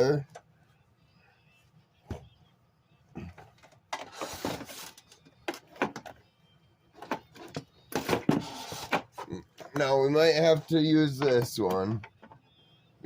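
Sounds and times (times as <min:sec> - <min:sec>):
plastic clattering and scraping: 0:03.2 - 0:06.2, 0:06.9 - 0:12.4.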